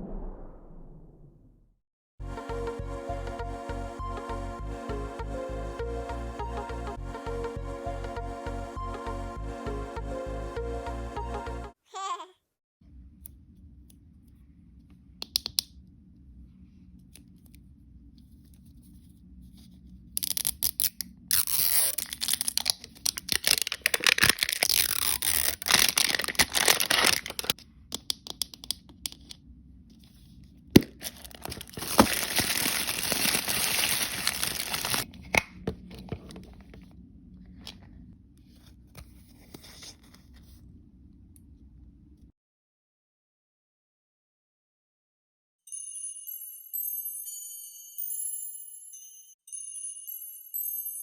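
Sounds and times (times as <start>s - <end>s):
plastic packaging tearing and crinkling: 20.2s - 27.6s, 30.8s - 35.5s.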